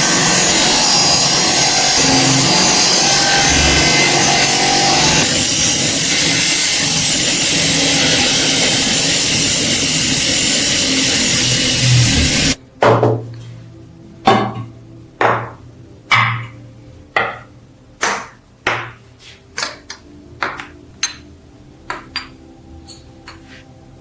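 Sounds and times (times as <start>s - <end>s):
metal-on-metal taps: 19.6s - 21.2s, 21.9s - 23.5s.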